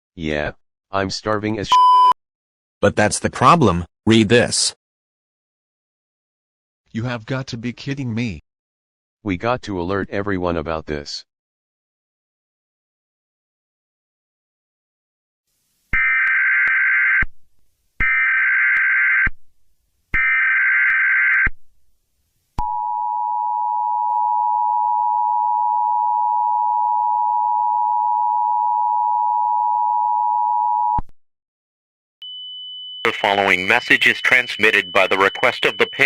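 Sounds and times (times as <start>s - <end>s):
two-tone attention signal: 33.0s - 36.0s
digital data tone bursts: 33.1s - 36.0s.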